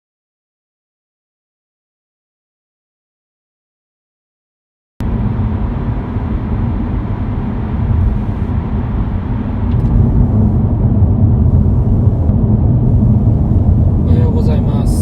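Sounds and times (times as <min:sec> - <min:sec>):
road and engine rumble in a car: 0:05.0 - 0:15.0.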